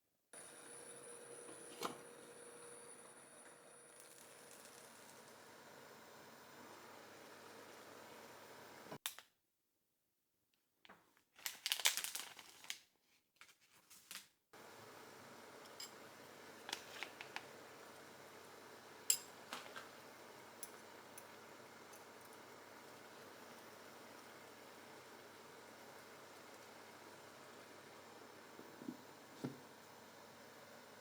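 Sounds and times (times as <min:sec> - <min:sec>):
kitchen utensils and dishes clinking: 0:19.1 - 0:19.8.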